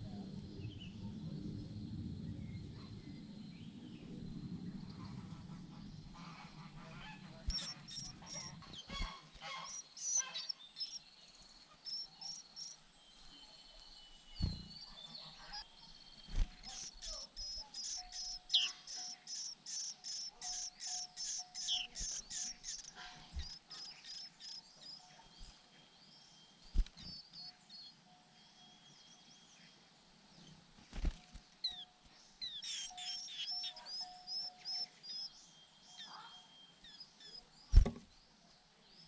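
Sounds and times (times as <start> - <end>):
nestlings chirping: 7.3 - 11.0, 11.7 - 25.7, 30.9 - 37.9
short dull thumps: 37.7 - 38.1.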